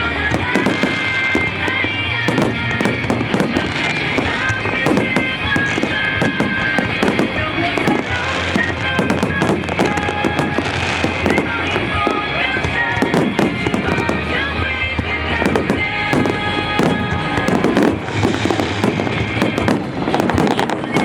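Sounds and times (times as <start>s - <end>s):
fireworks bangs and crackles: 0.0s - 21.0s
music playing: 0.0s - 21.0s.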